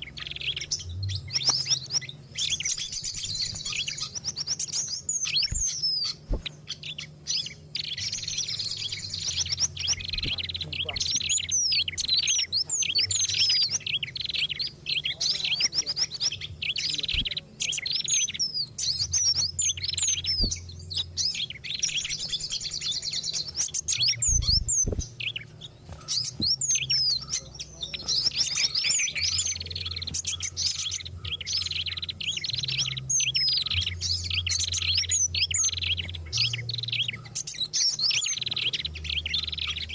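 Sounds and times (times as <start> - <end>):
songbirds chirping and whistling: 0.0 - 39.9
low hum: 19.1 - 27.0.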